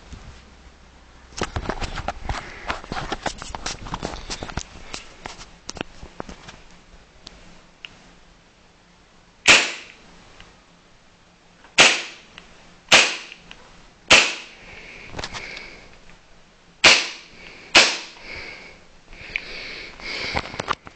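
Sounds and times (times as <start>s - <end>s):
airsoft pistol shots: 9.4s - 10.0s, 11.8s - 12.3s, 12.9s - 13.4s, 14.1s - 14.6s, 16.8s - 18.2s.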